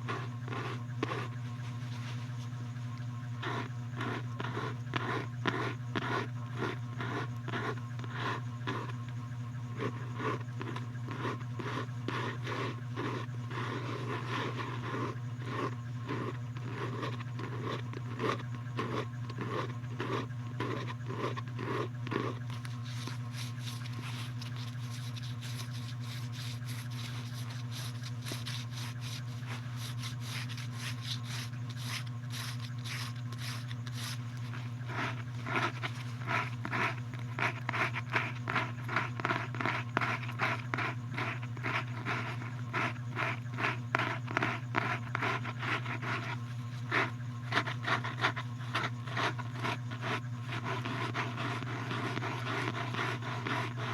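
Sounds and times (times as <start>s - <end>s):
steady low hum: 0.0s - 53.9s
scraping strokes: 21.4s - 53.9s.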